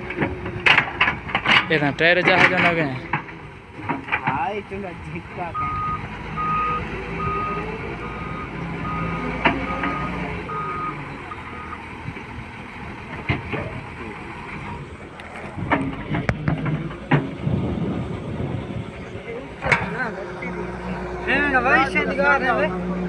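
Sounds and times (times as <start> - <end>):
reversing alarm beeping: 5.5 - 11.8.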